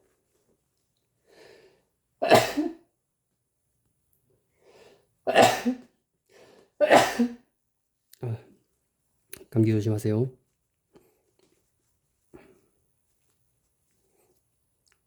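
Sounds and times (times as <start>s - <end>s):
man coughing: 2.2s - 2.8s, 5.3s - 5.8s, 6.8s - 7.4s.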